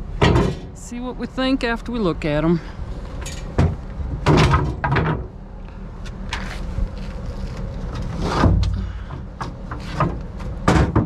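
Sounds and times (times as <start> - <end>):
boards clunking together: 0.2 - 0.7, 3.6 - 5.3, 8.3 - 11.0
heavy lumber thump: 0.2 - 0.8, 8.3 - 11.0.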